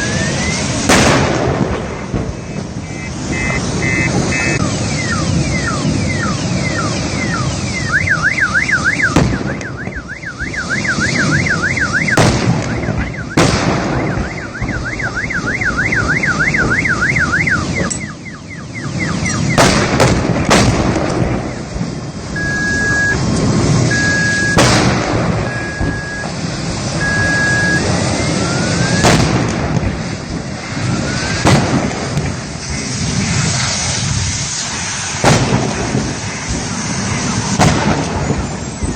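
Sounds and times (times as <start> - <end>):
car alarm warbling: 0.0 - 0.8, 2.3 - 19.7, 22.3 - 24.7, 25.3 - 26.4, 27.0 - 29.1
loud rushing fire noise: 0.0 - 38.9
sharp bangs: 0.0 - 38.9
short alarm beeps: 2.4 - 19.6, 22.3 - 24.6, 25.4 - 26.3, 27.0 - 29.0.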